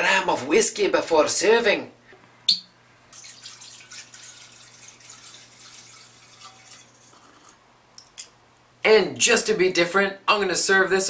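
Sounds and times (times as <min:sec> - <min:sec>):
liquid pouring from a bottle: 0:03.1 - 0:07.6.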